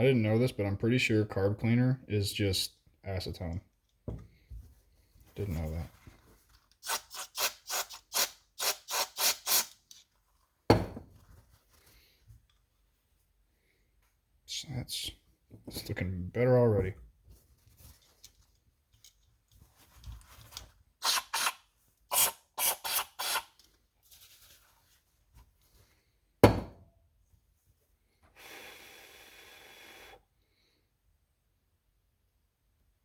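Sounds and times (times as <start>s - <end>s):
aerosol spray: 6.8s - 9.7s, 22.1s - 23.5s
sharp knock: 26.4s - 26.8s.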